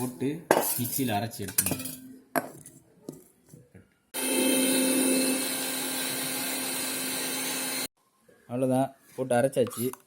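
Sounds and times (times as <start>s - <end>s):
mixer grinder motor whirring: 4.2s - 7.9s.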